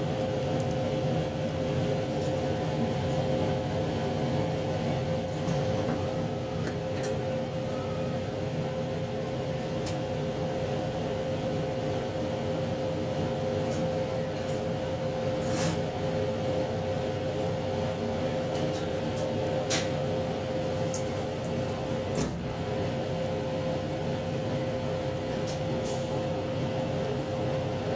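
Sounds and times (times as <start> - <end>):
constant whine: 0.0 - 27.9
train engine and running gear drone: 0.0 - 27.9.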